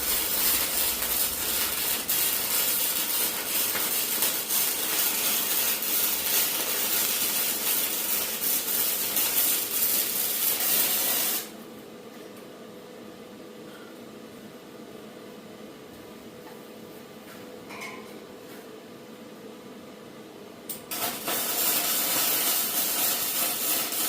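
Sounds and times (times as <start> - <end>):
welding arc crackling and hissing: 0.0 - 11.6, 20.7 - 24.0.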